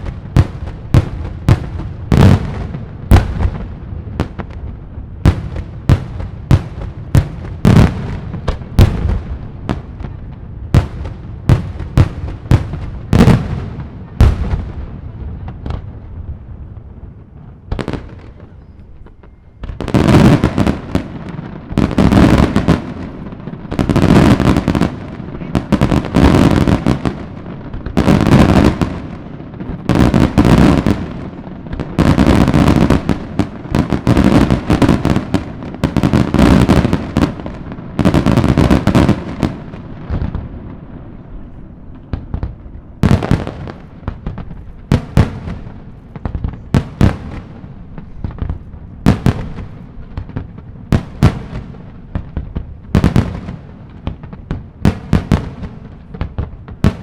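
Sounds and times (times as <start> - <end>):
fireworks bangs: 0.0 - 57.0.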